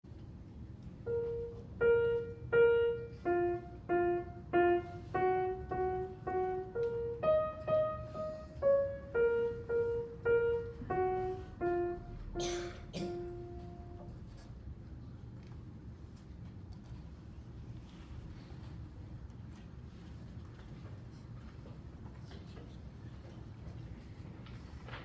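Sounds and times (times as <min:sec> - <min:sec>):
slow piano melody: 0:01.0 - 0:14.4
rustling noise: 0:02.6 - 0:12.0.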